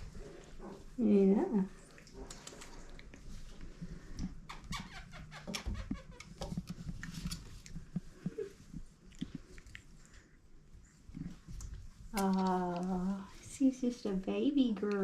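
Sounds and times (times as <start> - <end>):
puppies chewing with clicks and smacks: 1.7 - 4.4, 6.0 - 13.1.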